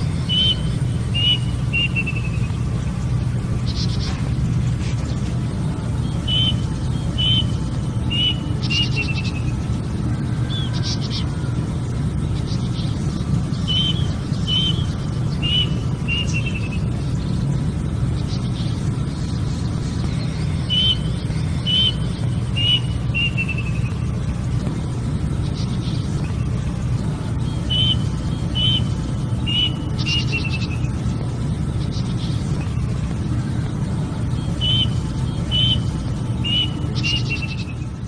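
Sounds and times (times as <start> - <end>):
cuckoo calling: 0.2 - 2.6, 6.0 - 9.7, 13.5 - 16.9, 20.1 - 24.2, 27.4 - 31.0, 34.2 - 38.0.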